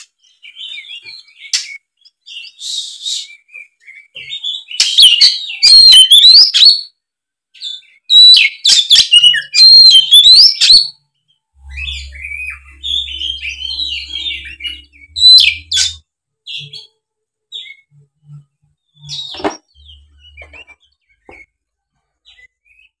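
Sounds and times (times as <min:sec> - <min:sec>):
loud sharp bird call: 0:04.6 - 0:06.8.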